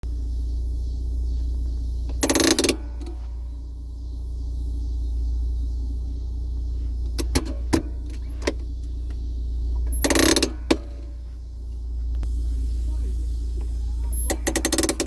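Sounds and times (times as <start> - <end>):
steady low hum: 0.0 - 15.0
ratchet clicks rattling: 2.2 - 3.1, 9.9 - 10.8, 14.1 - 15.0
handbrake lever clicks: 14.1 - 15.0.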